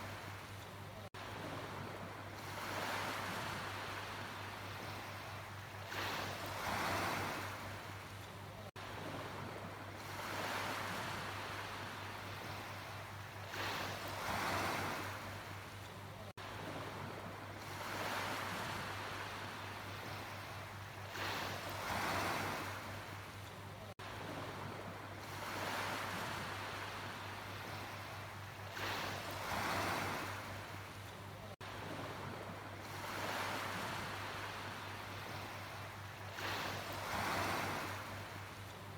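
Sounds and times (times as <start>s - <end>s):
sea waves breaking: 16.5s - 23.3s, 24.0s - 38.9s.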